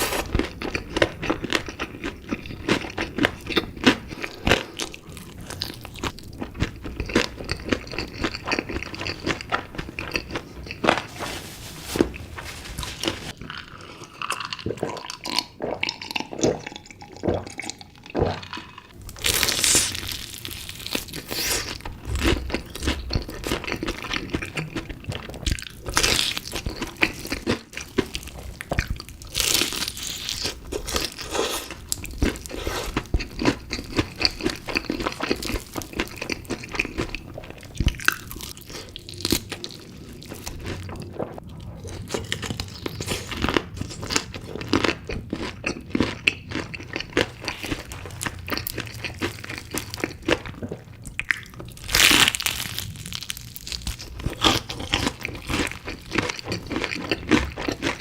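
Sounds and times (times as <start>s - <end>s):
close biting and chewing: 19.1s - 58.0s.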